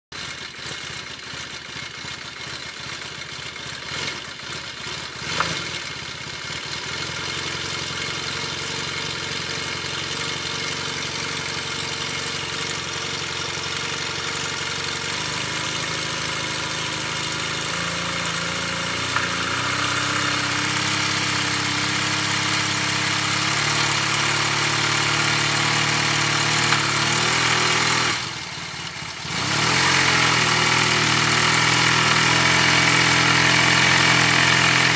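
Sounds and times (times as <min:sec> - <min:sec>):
engine knock: 0:00.1 - 0:34.9
scooter engine running: 0:00.2 - 0:34.9.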